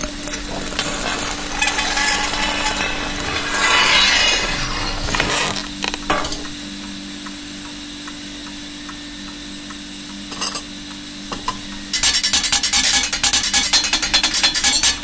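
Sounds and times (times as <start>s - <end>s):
frying sizzle: 0.0s - 4.3s.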